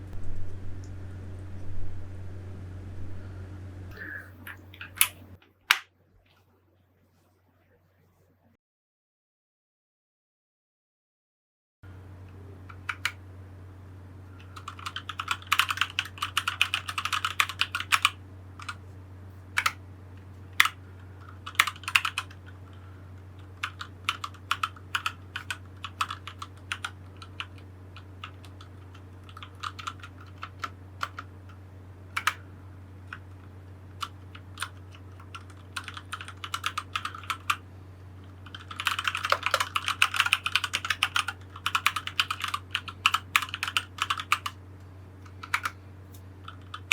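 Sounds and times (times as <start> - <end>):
mechanical keyboard key presses: 14.6 - 18.8, 21.4 - 22.4, 23.6 - 31.3, 34.0 - 37.6, 38.4 - 44.6.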